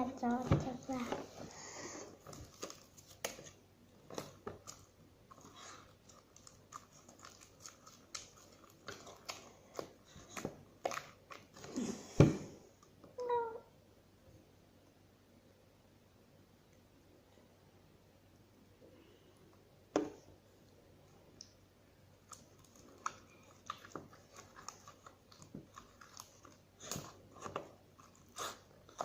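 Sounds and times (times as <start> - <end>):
sticky slime squelches: 0.0 - 12.6, 21.4 - 29.0.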